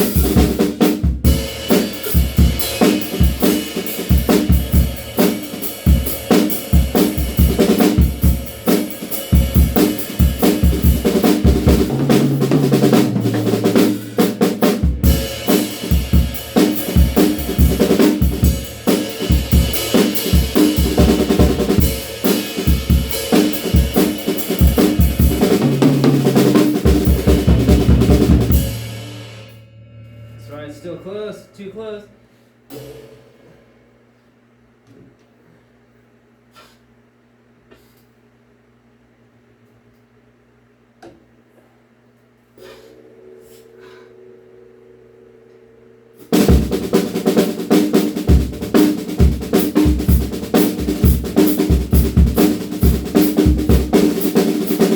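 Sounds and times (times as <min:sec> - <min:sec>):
drum kit groove: 0:00.0 - 0:32.0, 0:32.7 - 0:33.8, 0:46.2 - 0:54.9
ringing tom fills: 0:01.2 - 0:34.0.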